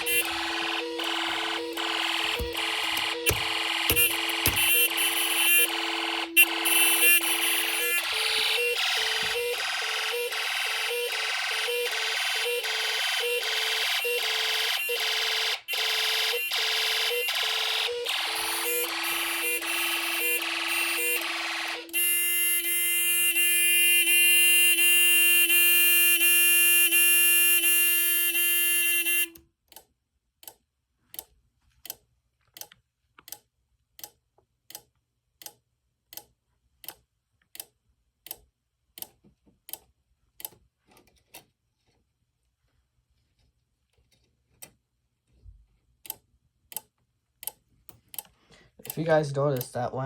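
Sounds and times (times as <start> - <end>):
electronic fire alarm tone: 0.0 - 29.4
quiet regular clicking: 29.7 - 42.0, 45.9 - 49.8.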